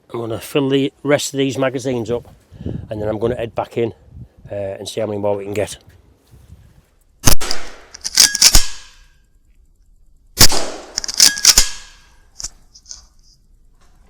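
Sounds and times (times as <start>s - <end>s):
air rifle shots: 7.2s - 9.0s, 10.4s - 12.1s.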